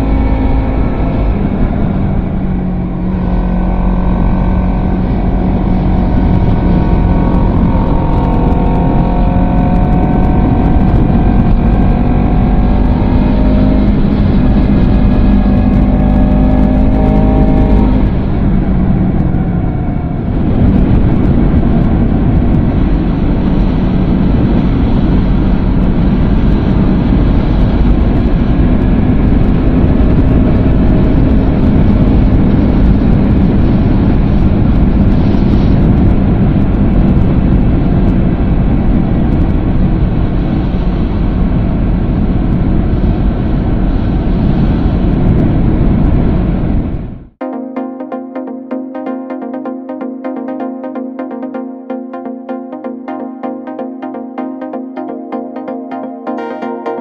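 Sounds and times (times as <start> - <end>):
motorcycle engine running: 0.0 - 40.4.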